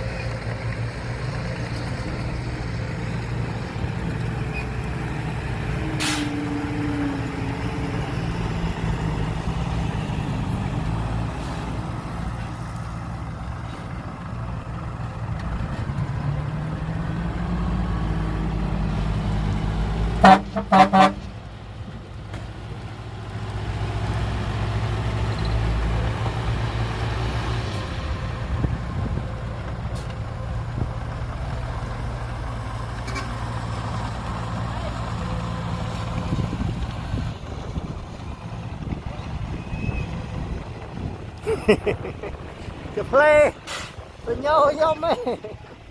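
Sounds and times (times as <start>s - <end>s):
truck diesel engine rumbling: 0.0s - 45.9s
truck horn toots: 20.2s - 21.3s.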